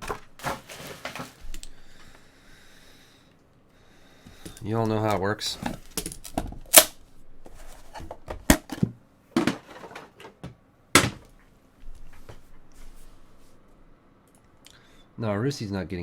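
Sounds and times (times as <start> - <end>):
scrapes and rustles: 0.0 - 1.7, 7.4 - 8.2.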